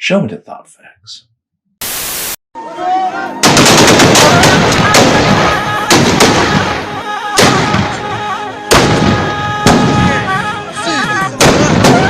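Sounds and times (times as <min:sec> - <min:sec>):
heavy blast cracks: 0:03.4 - 0:08.0, 0:08.7 - 0:10.2, 0:11.4 - 0:12.0
rapid gunshots: 0:03.4 - 0:08.0, 0:08.7 - 0:10.2, 0:11.4 - 0:12.0.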